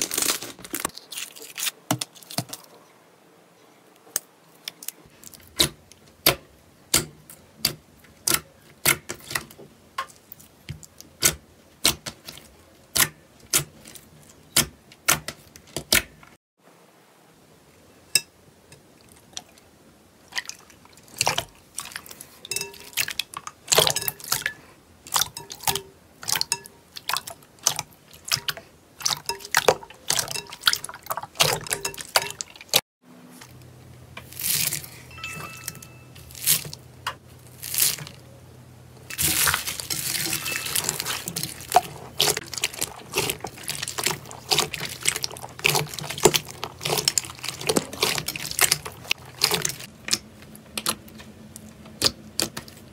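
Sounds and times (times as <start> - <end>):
crunchy crackling: 0.0 - 2.7, 36.3 - 38.3, 39.0 - 52.9.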